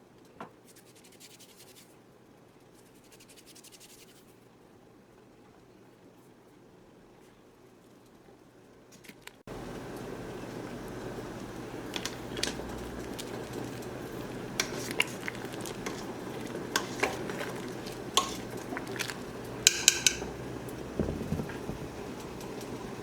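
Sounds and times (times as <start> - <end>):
steady low hum: 9.5 - 23.0
metal utensils clinking against pot: 14.6 - 20.4.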